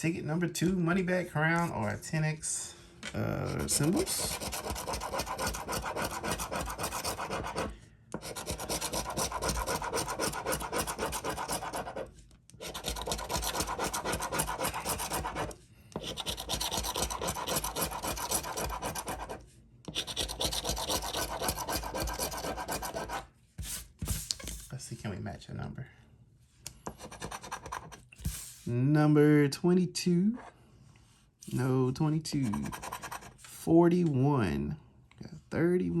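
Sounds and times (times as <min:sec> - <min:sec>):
lottery ticket being scratched: 0:03.2 - 0:23.2, 0:26.9 - 0:28.3, 0:32.3 - 0:33.6.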